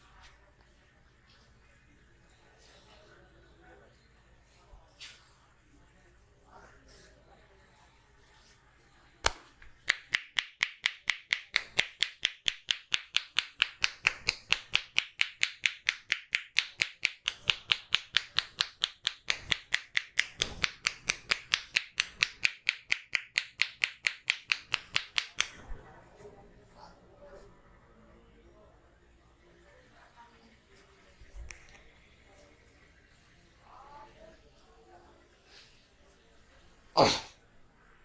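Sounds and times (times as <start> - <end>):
hands tapping in massage: 9.2 - 25.7.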